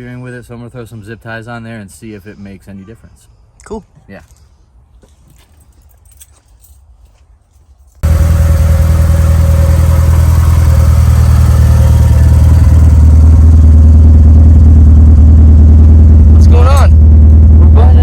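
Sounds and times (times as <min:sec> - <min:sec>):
loud car engine running: 0:08.0 - 0:18.0.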